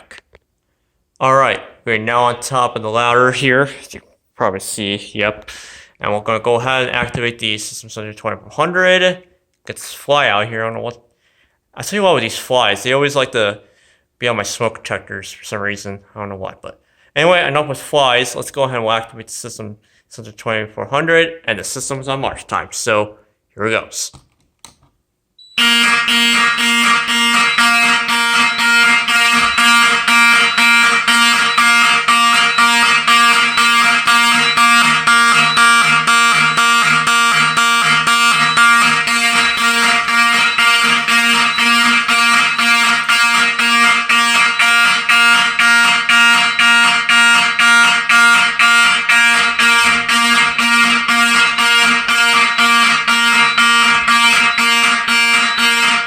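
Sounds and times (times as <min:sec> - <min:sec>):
fire alarm horn pulsing: 0:25.4 - 0:56.0.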